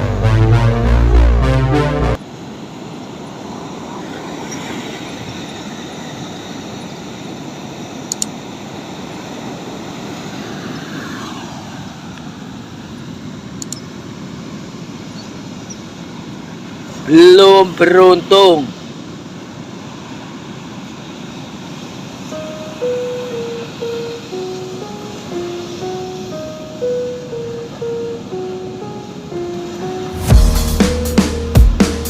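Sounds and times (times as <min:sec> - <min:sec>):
synthesizer intro music: 0:00.0 - 0:02.2, 0:22.3 - 0:32.0
steady rushing outdoor noise: 0:00.0 - 0:32.0.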